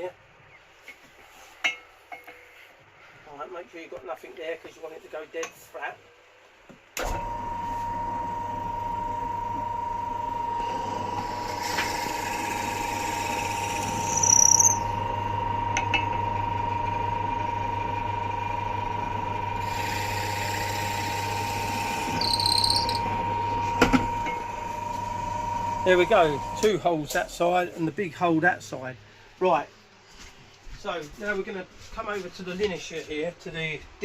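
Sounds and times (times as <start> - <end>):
drill motor humming: 10.6 - 15.2, 19.5 - 26.7
drill bit squealing into wood: 11.5 - 15.0, 19.6 - 23.1.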